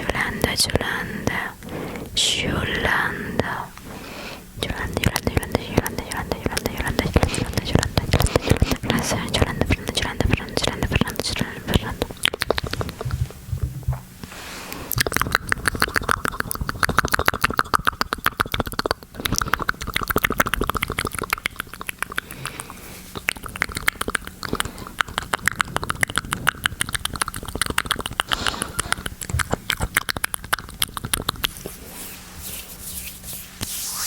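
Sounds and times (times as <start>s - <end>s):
wet mouth clicks and smacks: 5.0s - 13.4s, 14.7s - 31.8s.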